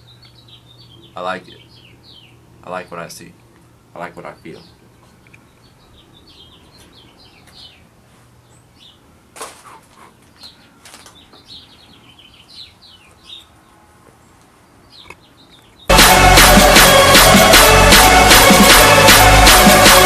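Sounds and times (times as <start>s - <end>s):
small birds chirping: 0.0s - 3.1s, 4.0s - 15.9s
loud electronic music: 15.9s - 20.0s.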